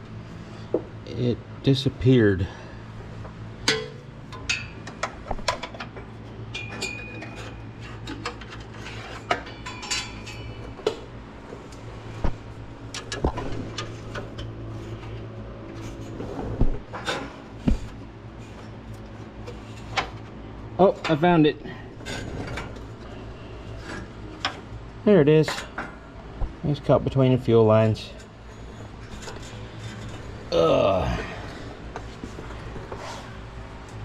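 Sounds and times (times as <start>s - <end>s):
steady low hum: 0.0s - 34.0s
metal tools clinking and rattling: 3.7s - 10.9s.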